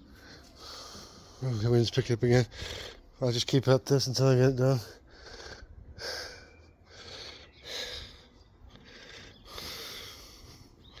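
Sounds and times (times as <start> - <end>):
man breathing heavily: 0.0 - 1.7, 2.4 - 3.2, 4.8 - 11.0.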